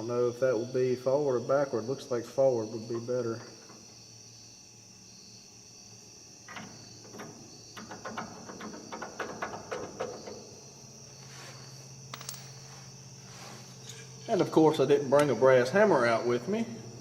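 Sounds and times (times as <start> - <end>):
crickets chirping: 0.0 - 17.0.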